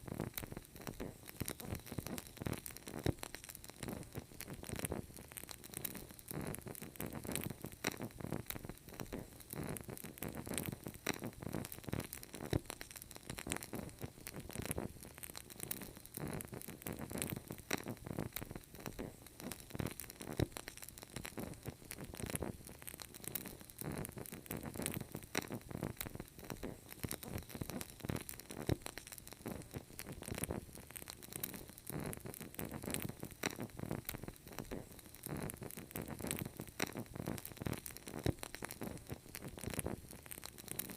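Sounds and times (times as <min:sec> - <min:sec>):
candle flame crackling: 0:00.0 - 0:40.9.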